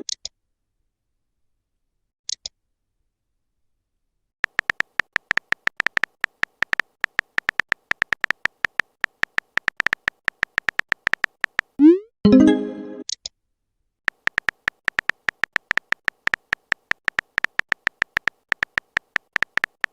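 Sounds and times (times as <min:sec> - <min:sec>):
phone keyboard typing clicks: 0:04.4 - 0:11.9, 0:14.1 - 0:19.9.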